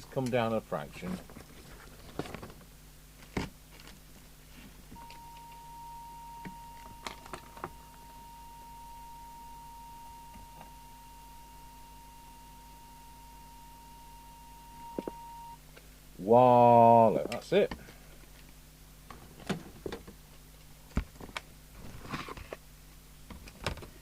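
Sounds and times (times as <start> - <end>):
faint steady hum: 0.0 - 24.0
steady test tone: 5.0 - 15.6.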